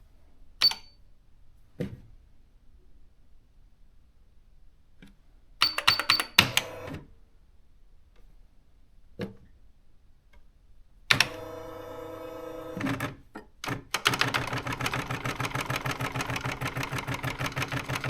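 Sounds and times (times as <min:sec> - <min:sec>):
typewriter click: 0:05.6 - 0:06.8
electronic typewriter printing: 0:05.6 - 0:07.0, 0:11.1 - 0:18.0.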